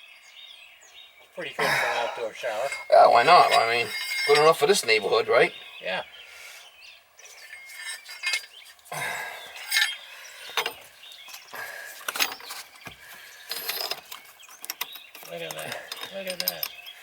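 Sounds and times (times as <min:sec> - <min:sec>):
metal fittings clinking: 0:02.4 - 0:05.3, 0:07.3 - 0:08.7, 0:09.5 - 0:12.6, 0:13.5 - 0:17.0.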